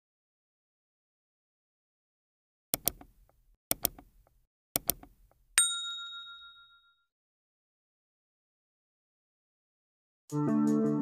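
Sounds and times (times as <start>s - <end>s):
double clicks: 2.8s - 5.4s
bell ding: 5.6s - 7.1s.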